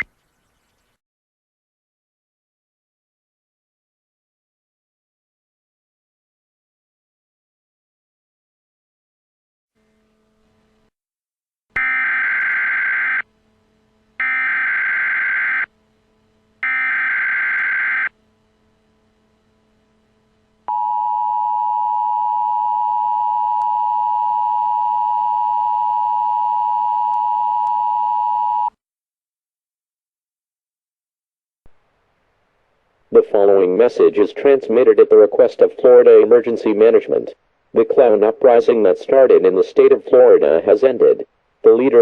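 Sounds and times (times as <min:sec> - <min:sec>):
screeching digital data bursts: 0:16.7 - 0:18.1.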